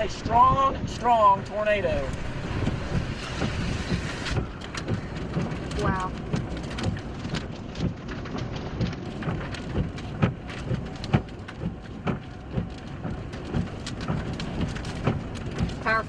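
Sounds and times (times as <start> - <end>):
heavy rain and wind: 0.0 - 16.0
raindrops hitting close by: 0.0 - 16.0.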